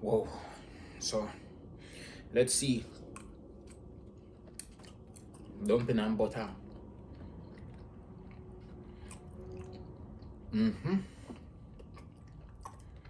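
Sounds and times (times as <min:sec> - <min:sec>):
person chewing food: 0:02.9 - 0:13.0.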